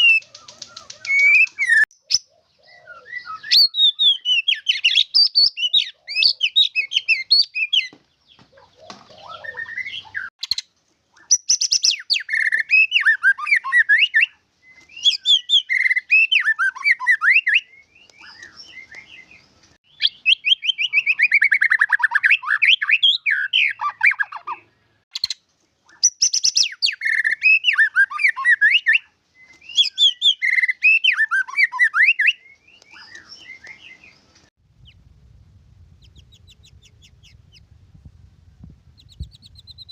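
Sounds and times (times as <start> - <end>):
bird singing whistled phrases: 0.0 - 7.9, 11.2 - 19.3, 19.9 - 24.6, 25.2 - 34.2.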